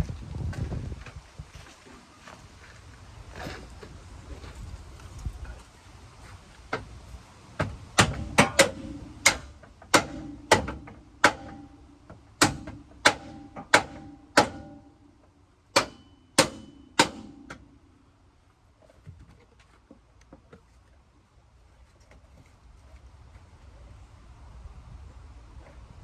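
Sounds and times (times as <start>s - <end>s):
hammer striking steel: 8.0s - 15.1s, 15.7s - 17.8s.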